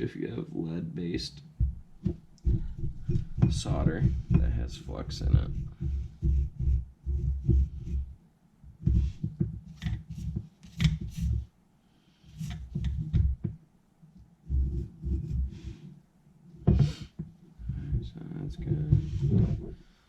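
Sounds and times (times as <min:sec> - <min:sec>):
handling thumps and rubbing: 0:01.6 - 0:11.5, 0:12.3 - 0:16.0, 0:16.6 - 0:19.9.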